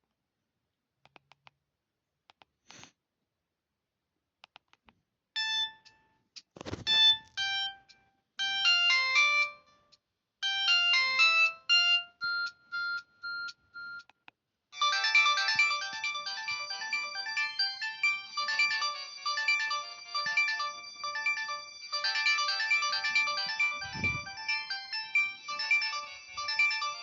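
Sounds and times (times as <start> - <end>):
synthesized ringtone melody: 5.4 - 6.0, 6.6 - 9.8, 10.4 - 14.0, 14.8 - 27.0.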